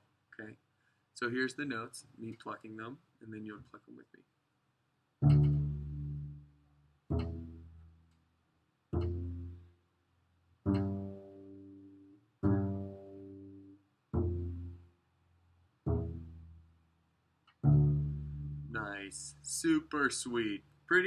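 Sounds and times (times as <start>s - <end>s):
double bass plucked notes: 5.2s - 8.1s, 8.9s - 9.8s, 10.6s - 14.9s, 15.8s - 16.8s, 17.5s - 19.9s.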